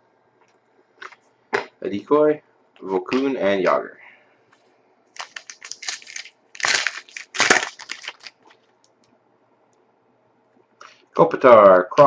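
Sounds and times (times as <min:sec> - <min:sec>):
cards shuffling with crinkly rustles: 0:05.2 - 0:08.8.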